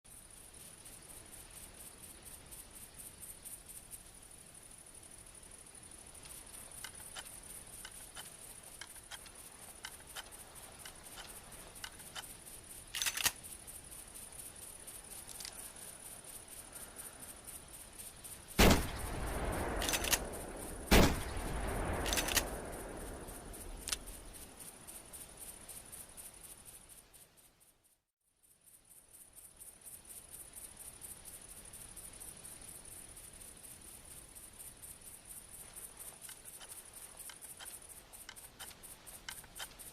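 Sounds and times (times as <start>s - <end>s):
metallic handling clicks: 13.0s - 13.4s, 15.2s - 15.6s, 22.0s - 22.5s
rifle lever being worked: 13.0s - 13.4s
rifle shots with echo: 18.6s - 22.8s.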